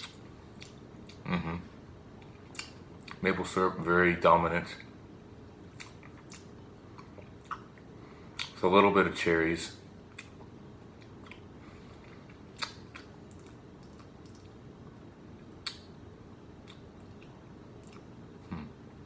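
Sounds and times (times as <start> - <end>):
low room hum: 0.0 - 19.0
wet mouth clicks and lip smacks: 12.6 - 14.5, 15.6 - 15.9.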